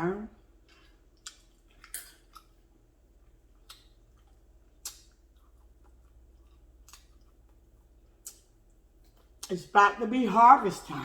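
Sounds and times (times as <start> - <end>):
mouth clicks from chewing: 0.7 - 2.6, 3.2 - 7.6, 8.2 - 9.6.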